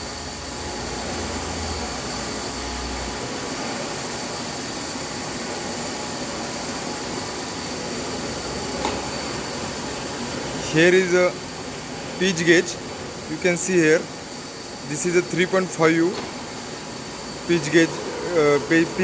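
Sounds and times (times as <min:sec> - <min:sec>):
metal lathe cutting thread: 0:17.4 - 0:19.0.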